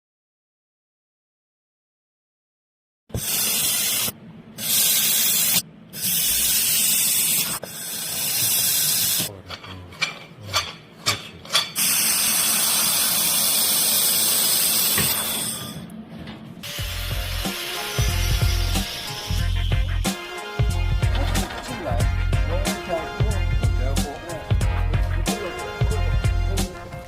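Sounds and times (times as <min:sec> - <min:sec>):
laser welder hissing: 0:03.1 - 0:09.3, 0:11.8 - 0:15.6, 0:16.6 - 0:20.0.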